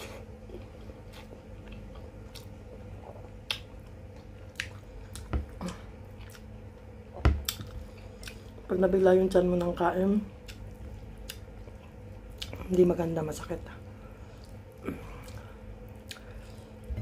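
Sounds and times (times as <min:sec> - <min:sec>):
person chewing food: 0:00.0 - 0:08.7, 0:10.4 - 0:12.6, 0:14.3 - 0:17.0.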